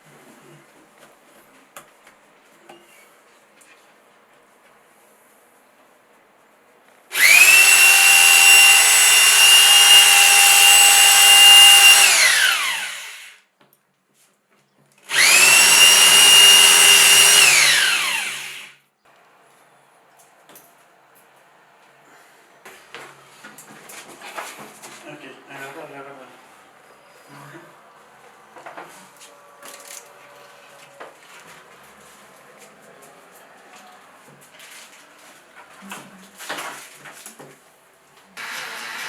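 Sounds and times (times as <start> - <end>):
power tool motor whining: 7.1 - 13.4, 15.1 - 18.8, 38.4 - 39.0.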